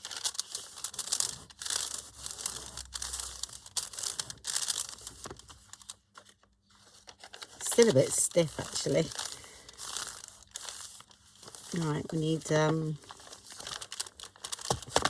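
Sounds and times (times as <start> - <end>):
paper crinkling and rustling: 0.0 - 15.0.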